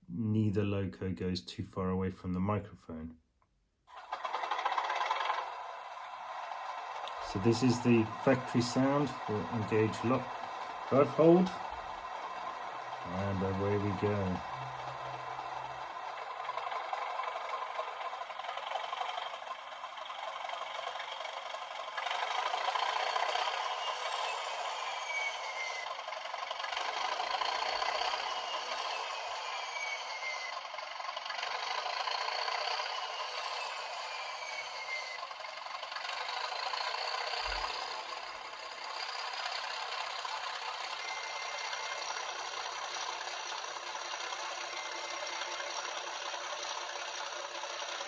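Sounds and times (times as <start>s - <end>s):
model train diesel engine sound: 3.9s - 48.0s
model train rattling on track: 3.9s - 48.0s
high whistling glides: 7.0s - 18.0s, 22.2s - 35.6s, 36.3s - 43.3s.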